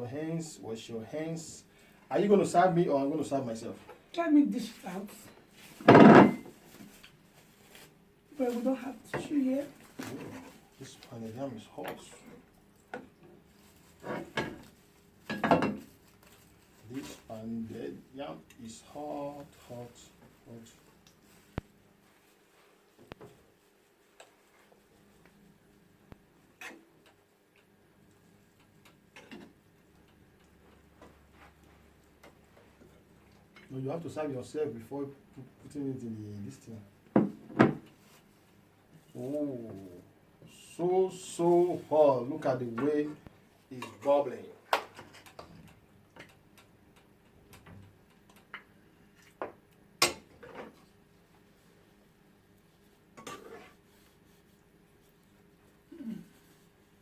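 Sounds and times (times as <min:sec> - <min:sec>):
dishes and utensils clinking: 0:05.8 - 0:06.6, 0:15.3 - 0:15.9.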